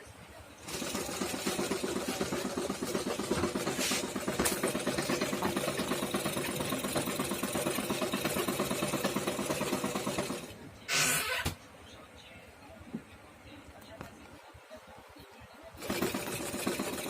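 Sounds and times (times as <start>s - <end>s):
sewing machine running: 0.6s - 10.6s, 15.8s - 17.0s.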